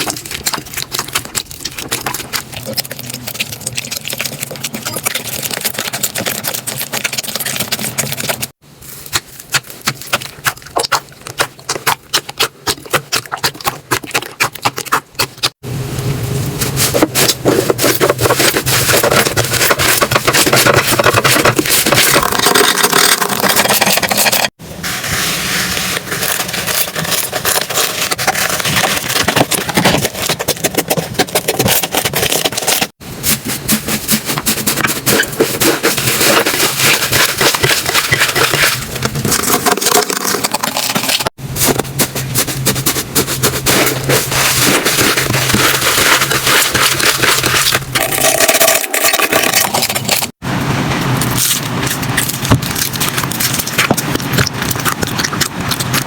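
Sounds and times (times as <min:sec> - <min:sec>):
slime crackling and popping: 0:51.2 - 0:56.0.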